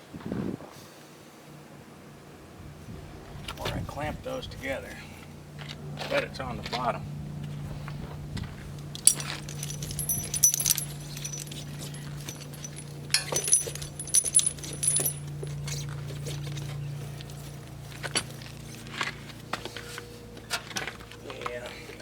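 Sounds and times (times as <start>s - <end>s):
chain links jangling: 9.0s - 15.5s.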